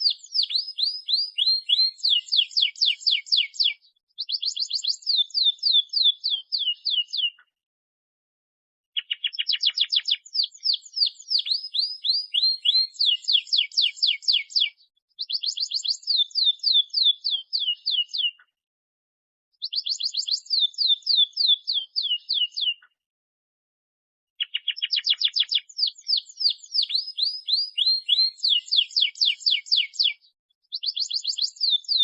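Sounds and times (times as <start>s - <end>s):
canary singing trills: 0.0s - 7.4s, 9.0s - 18.5s, 19.6s - 22.9s, 24.4s - 32.0s.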